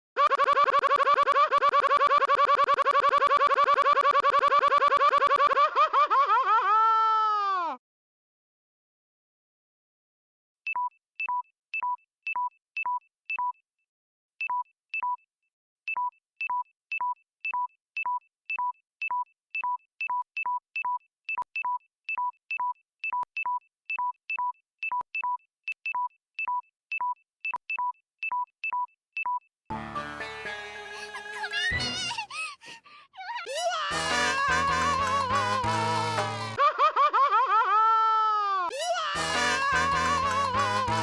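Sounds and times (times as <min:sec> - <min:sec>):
music: 0:29.7 - 0:32.1, 0:33.9 - 0:36.6, 0:39.2 - 0:41.0.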